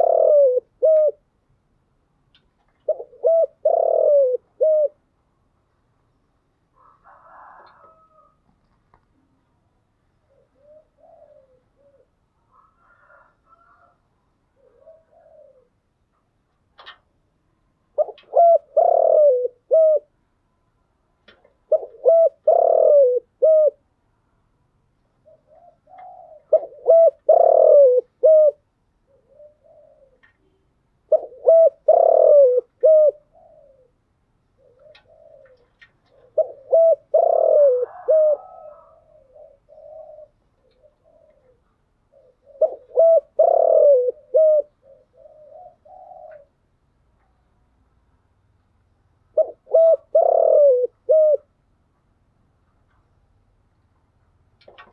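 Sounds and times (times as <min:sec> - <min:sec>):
dove cooing: 0:00.0 - 0:01.3, 0:02.8 - 0:05.1, 0:06.8 - 0:08.4, 0:10.2 - 0:15.9, 0:17.9 - 0:20.2, 0:21.3 - 0:23.9, 0:25.2 - 0:46.7, 0:49.3 - 0:51.6.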